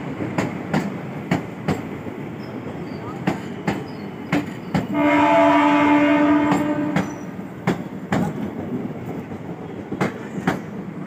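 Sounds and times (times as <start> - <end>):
train wheels clacking: 0.0 - 11.0
locomotive horn: 4.9 - 7.1.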